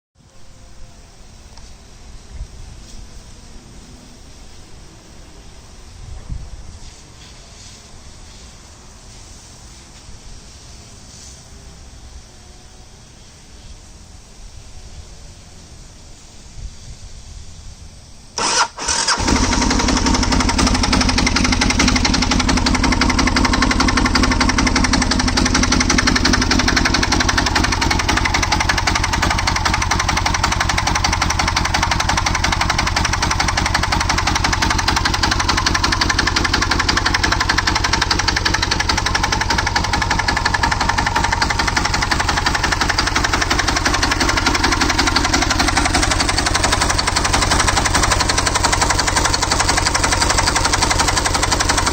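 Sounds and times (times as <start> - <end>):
diesel motorcycle engine: 18.4 - 51.9.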